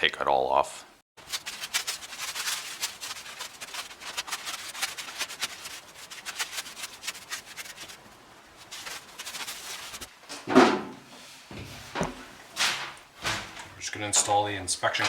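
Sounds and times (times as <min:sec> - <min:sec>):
masking tape peeling and tearing: 0:01.2 - 0:10.1.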